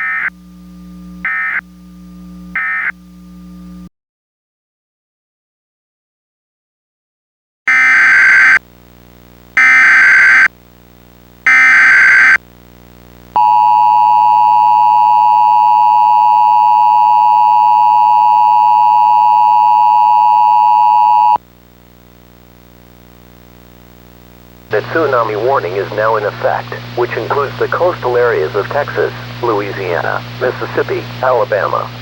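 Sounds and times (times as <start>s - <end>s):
digital data tone bursts: 0.0s - 0.4s, 1.2s - 1.6s, 11.5s - 12.4s
two-tone attention signal: 0.0s - 3.0s, 13.4s - 21.4s.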